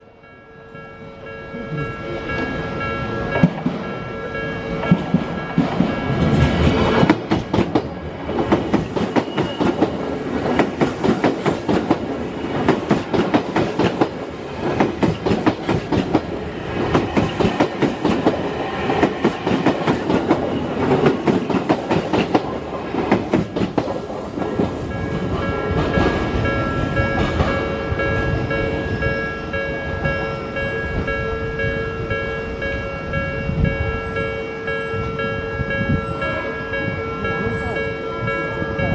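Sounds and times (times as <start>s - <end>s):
train wheels clattering over rail joints: 4.8s - 26.4s.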